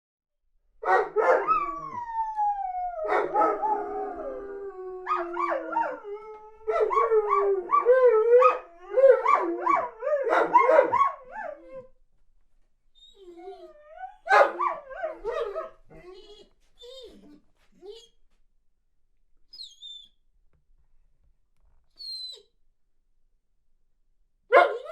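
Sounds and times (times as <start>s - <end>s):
dog howling and whining: 1.0s - 11.9s, 13.0s - 18.1s.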